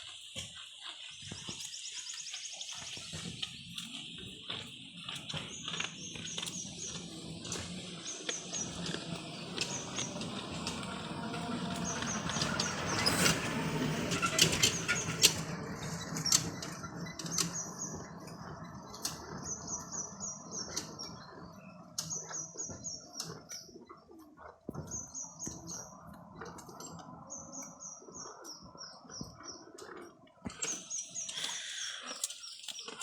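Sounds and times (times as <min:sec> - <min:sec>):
small bird chirping: 0:00.0 - 0:10.9, 0:14.2 - 0:33.0
sharp crunching: 0:02.9 - 0:09.1.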